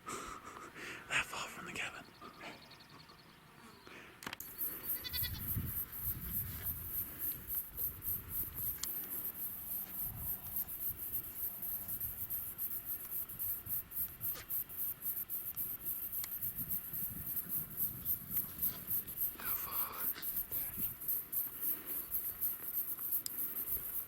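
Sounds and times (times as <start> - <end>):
goats bleating: 4.9 - 5.5.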